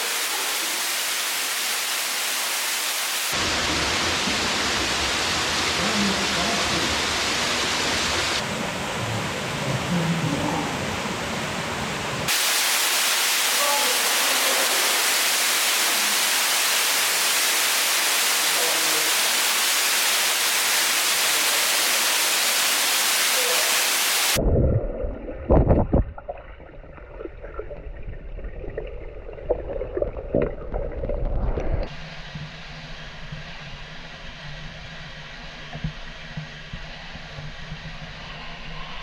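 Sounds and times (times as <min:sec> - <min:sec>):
waterfall rushing: 0:00.0 - 0:24.4.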